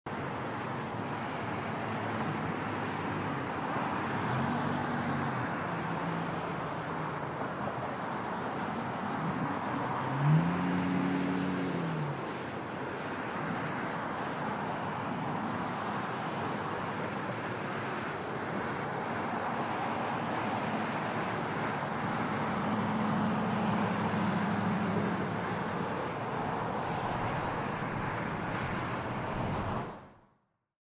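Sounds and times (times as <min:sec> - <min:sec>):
wind: 0:00.0 - 0:30.6
distant traffic: 0:16.1 - 0:30.3.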